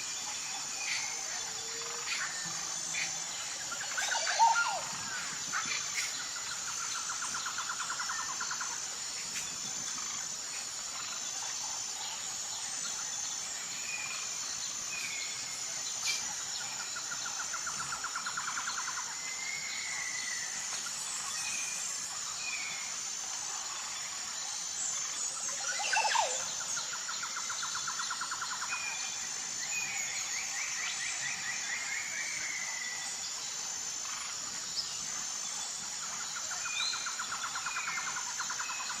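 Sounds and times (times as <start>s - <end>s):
high-pitched insect drone: 0.0s - 39.0s
bird whistles and calls: 3.9s - 5.0s.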